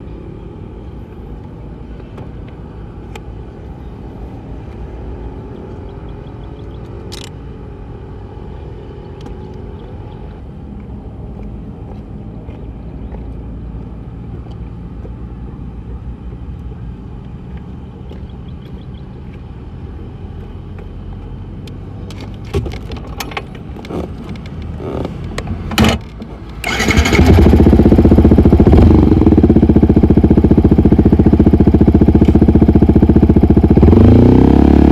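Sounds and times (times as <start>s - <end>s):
motorcycle engine idling: 26.6s - 34.0s
motorcycle engine under throttle: 26.6s - 34.9s
motorcycle throttle blips: 26.6s - 34.9s.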